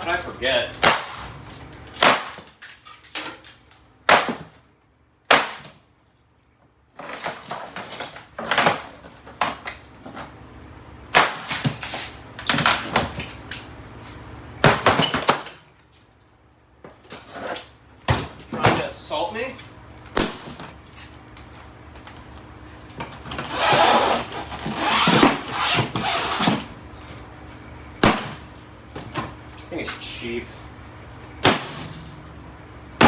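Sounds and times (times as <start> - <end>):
sharp blows on fridge door: 4.1 - 4.6, 28.0 - 28.4, 31.4 - 31.9.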